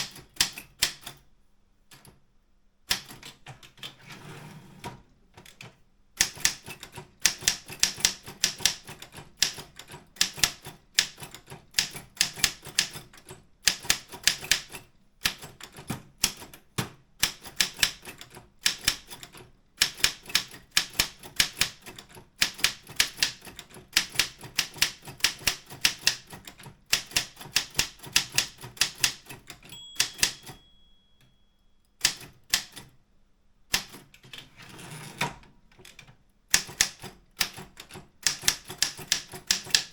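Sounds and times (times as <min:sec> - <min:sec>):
typewriter key strikes: 0:00.0 - 0:01.2, 0:06.2 - 0:16.6, 0:17.2 - 0:31.4, 0:32.0 - 0:32.9, 0:36.5 - 0:39.9.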